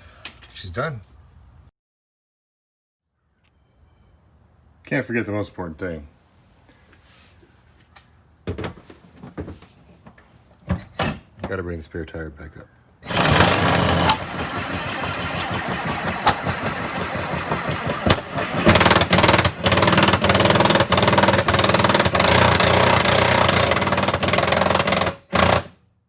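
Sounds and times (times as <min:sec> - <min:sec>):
spare tire winch ratcheting: 0:13.0 - 0:25.7.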